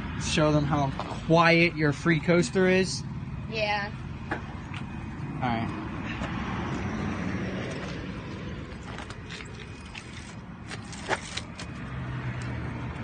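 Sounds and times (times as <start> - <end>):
bike rolling: 6.7 - 12.6.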